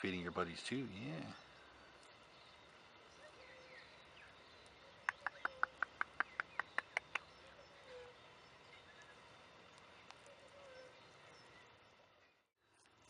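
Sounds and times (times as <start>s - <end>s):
faint bird chirps: 0.0s - 12.9s
parrot sharp clicks: 5.0s - 7.2s.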